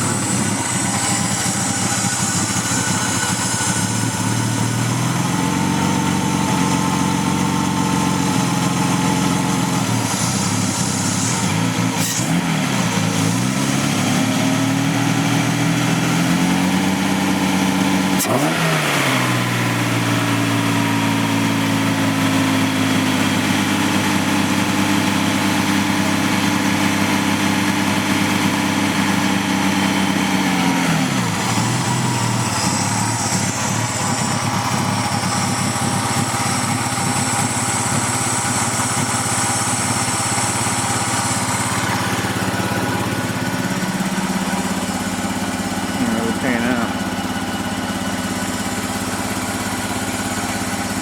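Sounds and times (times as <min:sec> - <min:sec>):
car engine idling unevenly: 0:00.0 - 0:51.0.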